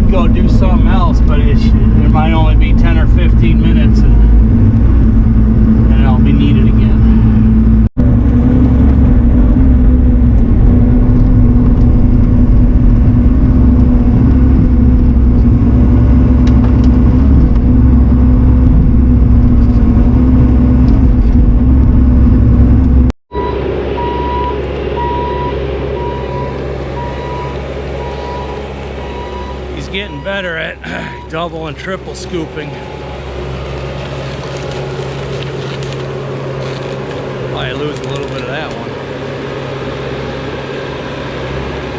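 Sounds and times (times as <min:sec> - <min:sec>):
diesel engine running: 0:00.0 - 0:41.9
reversing alarm beeping: 0:23.3 - 0:31.5.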